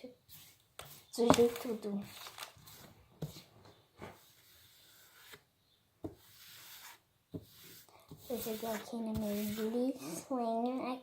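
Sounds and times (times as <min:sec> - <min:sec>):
hands rubbing and scraping: 0:06.2 - 0:10.2.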